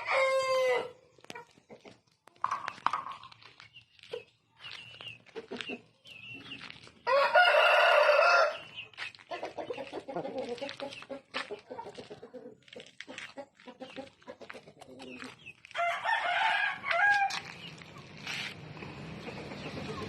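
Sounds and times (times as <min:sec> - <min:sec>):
rooster crowing: 0:00.0 - 0:00.9, 0:07.1 - 0:08.6, 0:15.8 - 0:17.4.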